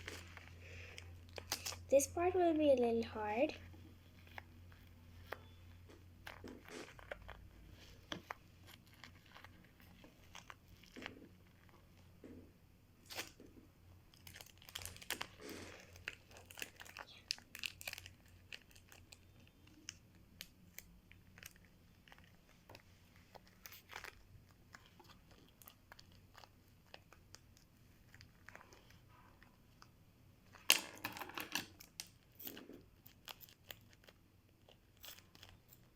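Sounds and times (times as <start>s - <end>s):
craft materials crinkling and clicking: 4.1s - 12.4s, 14.1s - 29.9s.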